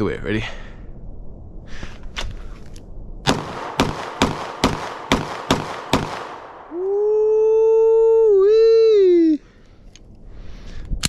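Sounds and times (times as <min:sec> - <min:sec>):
pistol shots: 0:03.3 - 0:06.7.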